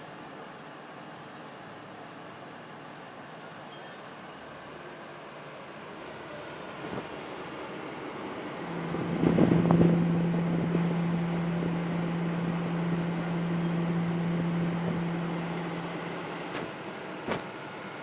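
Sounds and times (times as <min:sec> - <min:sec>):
graphics card coil whine: 0:07.6 - 0:18.0.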